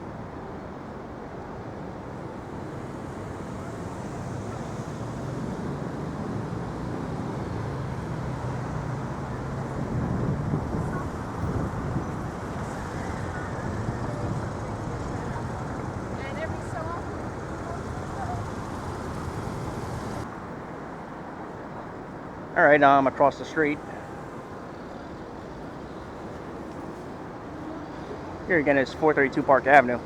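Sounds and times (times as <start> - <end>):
city street traffic: 0.0 - 30.0
vehicle passing close: 1.9 - 20.3.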